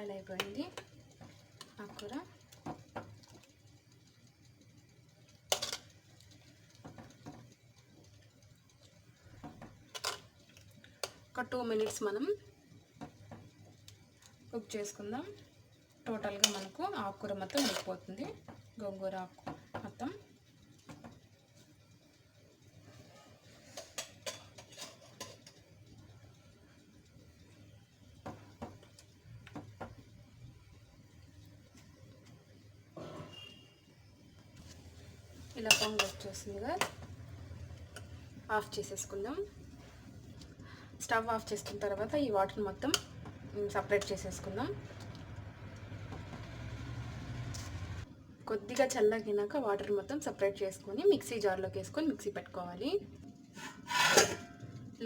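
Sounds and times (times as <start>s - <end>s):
low steady hum: 33.9s - 55.0s
spoon clinking against pot: 35.7s - 36.2s
utensil clattering against pot: 35.7s - 37.0s.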